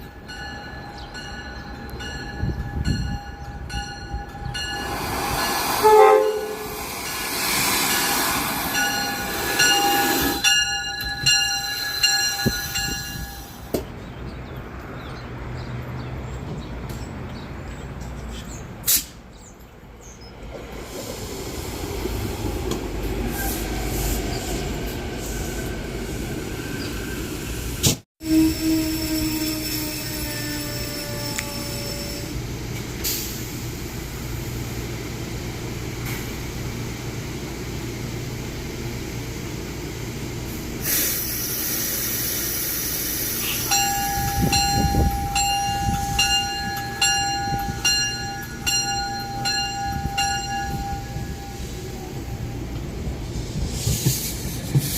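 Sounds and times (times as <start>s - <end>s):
train wheel and rail rumble: 0.0s - 54.9s
train horn blasts: 5.8s - 6.8s, 28.2s - 32.4s.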